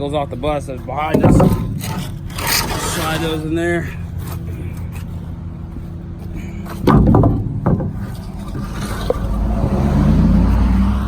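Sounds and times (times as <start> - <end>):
truck engine idling: 0.0 - 11.0
wooden blocks clattering: 1.1 - 3.4, 6.6 - 9.6.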